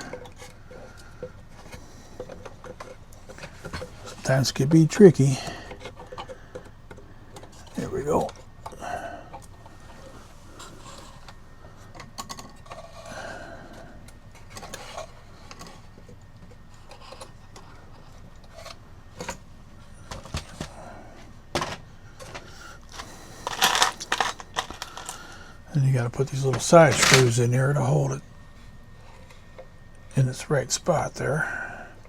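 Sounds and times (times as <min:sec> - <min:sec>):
clicks of parts being handled: 0:21.6 - 0:25.2, 0:26.5 - 0:27.4.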